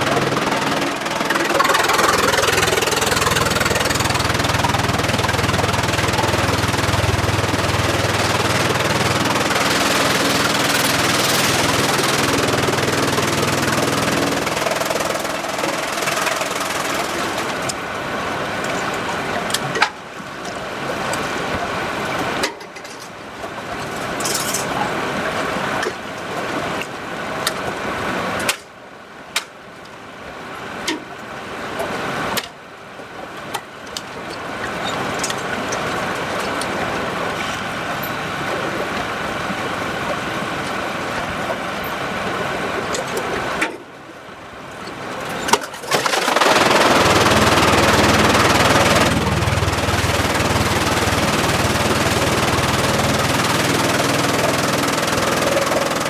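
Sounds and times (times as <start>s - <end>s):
sawmill machinery running: 0.0s - 22.5s, 44.7s - 56.0s.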